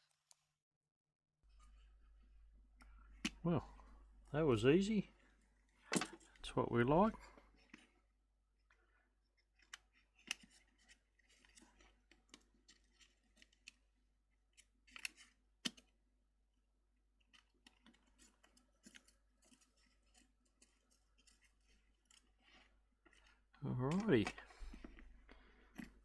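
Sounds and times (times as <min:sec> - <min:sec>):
plastic parts clicking and scraping: 0:05.1 - 0:06.5, 0:07.2 - 0:16.0, 0:17.2 - 0:26.0.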